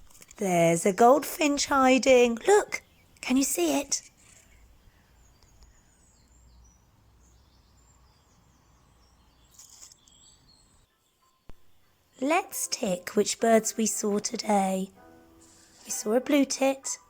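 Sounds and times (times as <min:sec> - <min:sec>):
songbirds chirping: 0:00.0 - 0:17.0.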